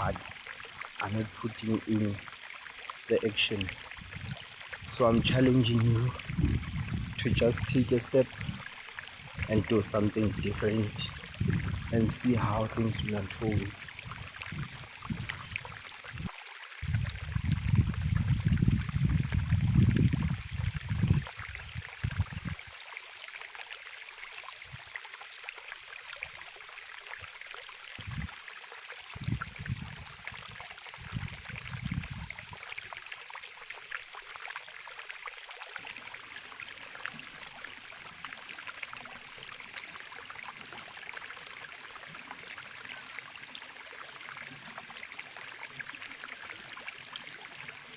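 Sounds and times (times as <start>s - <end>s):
running water rushing: 0.0s - 47.9s
low rumbles: 4.1s - 7.7s, 9.3s - 15.5s.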